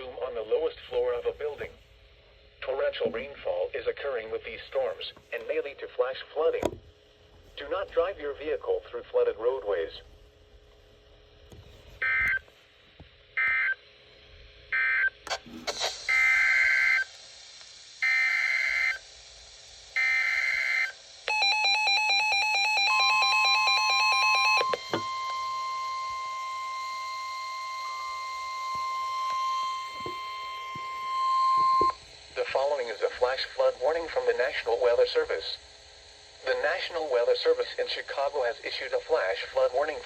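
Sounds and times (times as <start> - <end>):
steady warning alarm tone: 18.0 - 19.0, 20.0 - 35.0.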